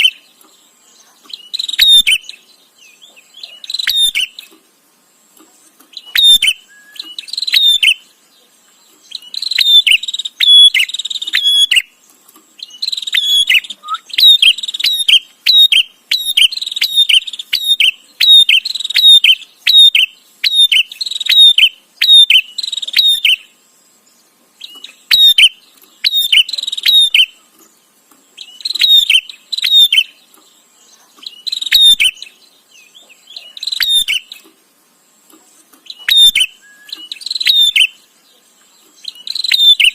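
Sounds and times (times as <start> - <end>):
bird chattering calls: 1.2 - 4.6, 5.9 - 8.1, 9.0 - 12.0, 12.6 - 23.5, 24.6 - 27.5, 28.4 - 30.2, 31.0 - 34.5, 35.8 - 38.1, 39.0 - 39.9.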